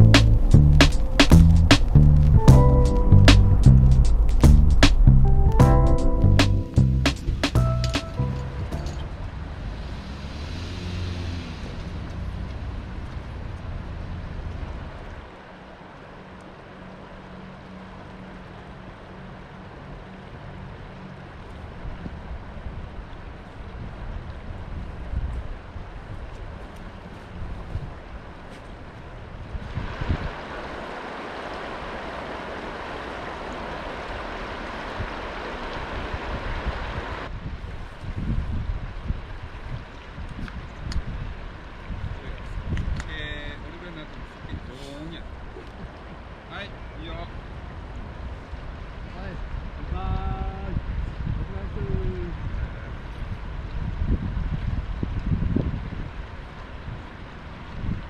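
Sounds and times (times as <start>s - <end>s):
wind on microphone: 0.0s - 7.8s, 21.6s - 30.9s, 34.6s - 43.4s, 48.0s - 58.0s
car engine and road noise: 0.0s - 50.0s.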